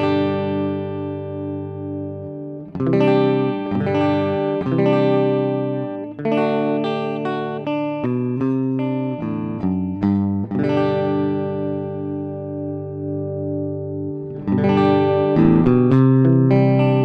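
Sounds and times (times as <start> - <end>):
clean electric guitar chords: 0.0 - 17.0.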